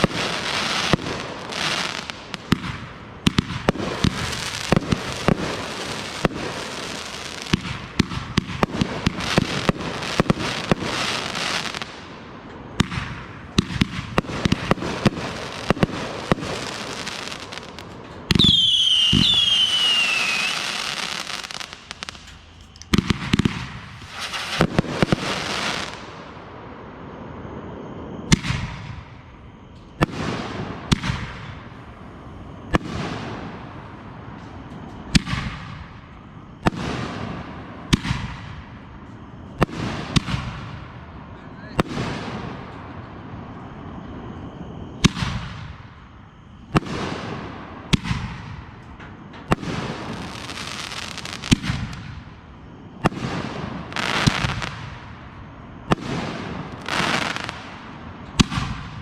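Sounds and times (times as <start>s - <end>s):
fireworks cracking and banging: 0.0s - 26.1s, 46.7s - 59.0s
whistling fireworks: 0.0s - 59.0s.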